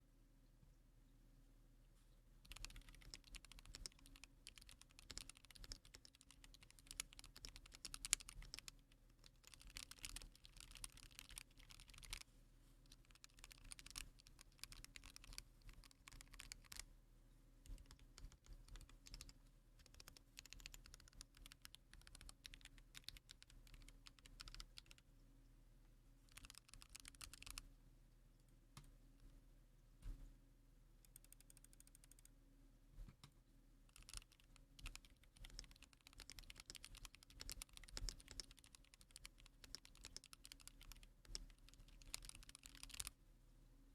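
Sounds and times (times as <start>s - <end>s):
faint steady hum: 0.0s - 43.9s
keyboard typing: 2.4s - 12.2s, 12.9s - 16.8s, 17.6s - 25.0s, 26.3s - 27.6s, 31.0s - 32.3s, 33.9s - 43.1s.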